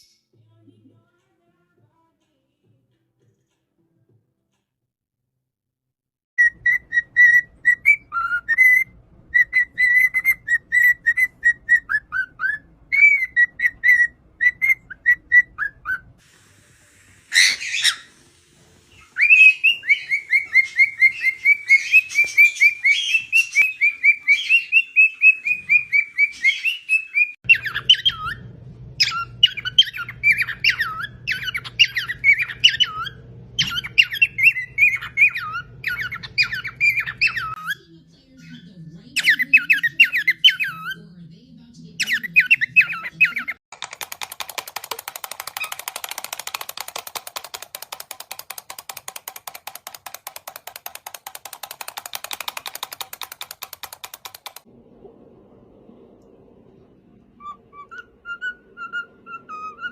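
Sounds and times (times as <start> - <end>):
parrots chirping and whistling: 6.4 - 16.2, 17.2 - 18.2, 18.9 - 37.8, 38.4 - 41.0, 42.0 - 54.6, 57.4 - 59.9
loud harsh parrot call: 17.3 - 18.1
low steady hum: 54.7 - 59.8.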